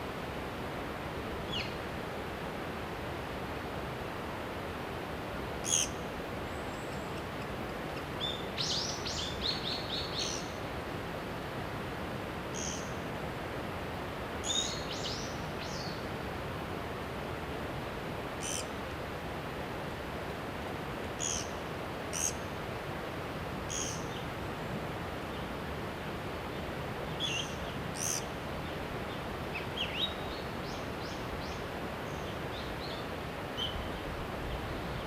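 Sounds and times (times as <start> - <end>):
steady background hiss: 0.0 - 35.0
wild birds calling: 5.6 - 10.6, 18.4 - 18.7, 21.2 - 22.4, 23.7 - 24.2, 27.1 - 28.3.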